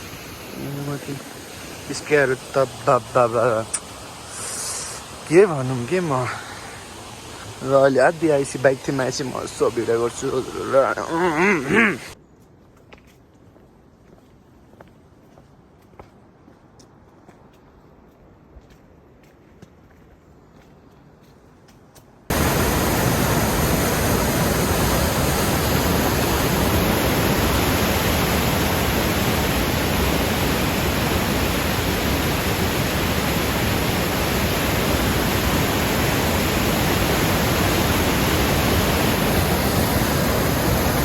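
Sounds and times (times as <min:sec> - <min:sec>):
waterfall rushing: 0:00.0 - 0:12.2, 0:22.3 - 0:41.0.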